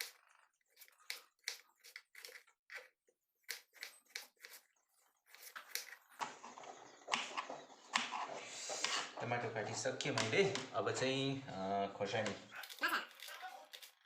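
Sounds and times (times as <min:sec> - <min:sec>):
knife cutting tomatoes on board: 0:00.0 - 0:06.4.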